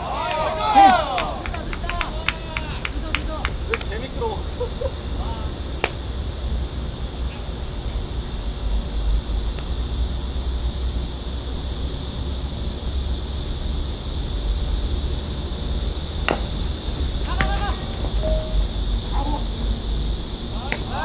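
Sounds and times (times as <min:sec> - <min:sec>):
insects droning: 0:00.0 - 0:21.0
wind buffeting microphone: 0:16.3 - 0:20.5.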